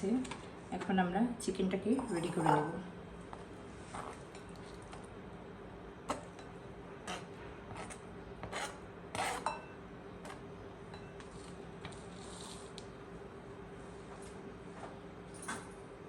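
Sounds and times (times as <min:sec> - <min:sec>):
utensil scrape: 0:07.1 - 0:09.5, 0:11.2 - 0:12.8.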